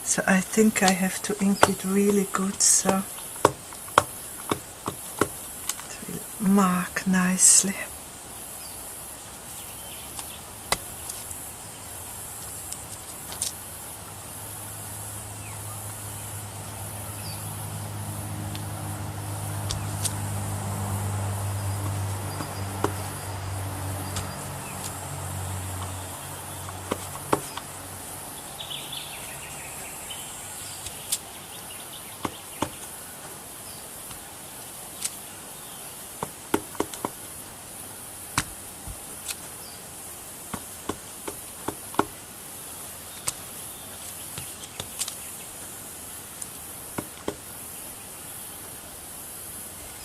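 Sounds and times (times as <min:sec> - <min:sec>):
steady high hiss: 0:00.0 - 0:50.0
rubber stamp tapping: 0:01.5 - 0:01.8, 0:02.9 - 0:05.8, 0:26.7 - 0:27.6, 0:40.5 - 0:42.1.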